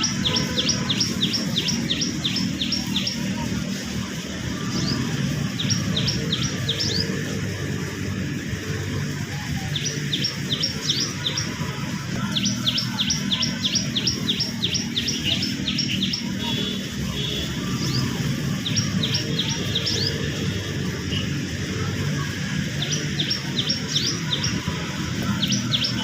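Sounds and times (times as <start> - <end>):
small bird chirping: 0.0 - 4.0, 9.7 - 21.4.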